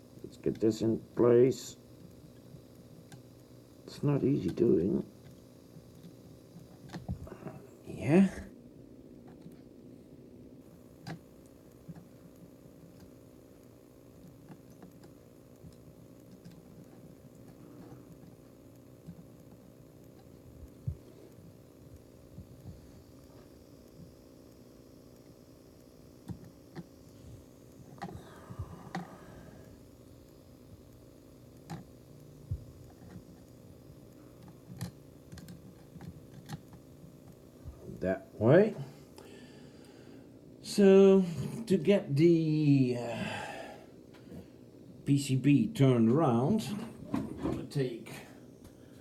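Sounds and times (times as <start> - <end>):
low steady hum: 0.0 - 49.0
small electronic parts clicking: 10.9 - 28.2, 32.8 - 37.4.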